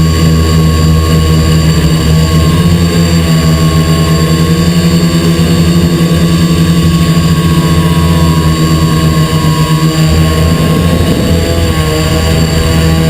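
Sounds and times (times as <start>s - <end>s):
drone motors whining: 0.0s - 13.0s.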